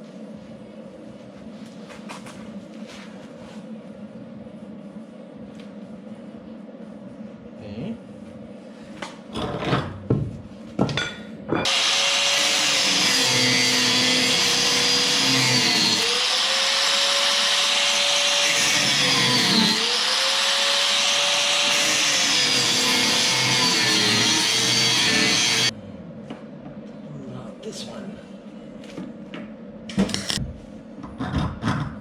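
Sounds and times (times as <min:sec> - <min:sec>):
electric power tool running: 0:11.6 - 0:25.7.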